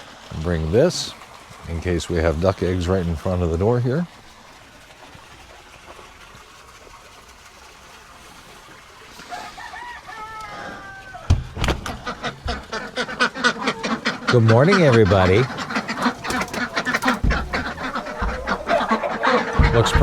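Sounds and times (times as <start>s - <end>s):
chicken calling: 9.3s - 20.0s
sharp thump: 11.3s - 12.7s, 16.2s - 20.0s
clicks and rattles: 11.3s - 12.8s, 15.6s - 20.0s.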